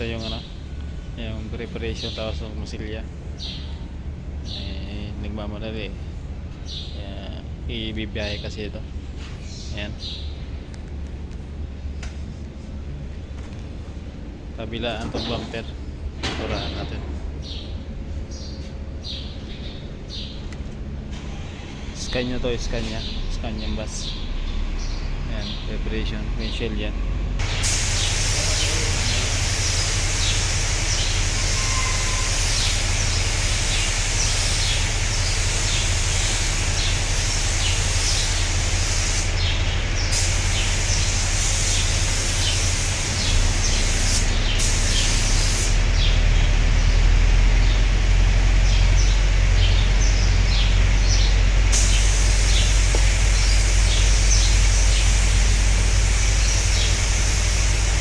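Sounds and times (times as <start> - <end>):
birds chirping: 0.0 - 10.8, 14.2 - 20.8, 27.4 - 58.0
spray gun hissing: 27.4 - 46.2, 48.0 - 58.0.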